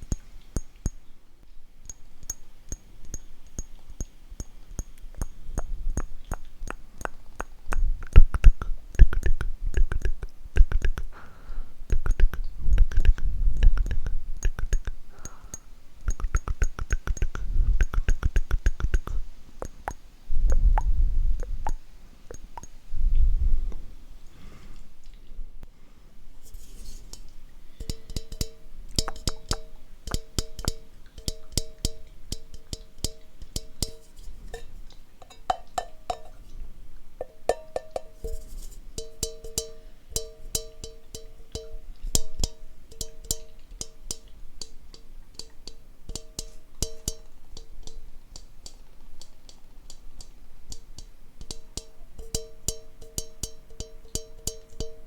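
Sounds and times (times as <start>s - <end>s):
sharp rhythmic clicks and taps: 1.8s - 11.2s, 11.9s - 22.8s, 27.8s - 34.0s, 39.0s - 55.0s.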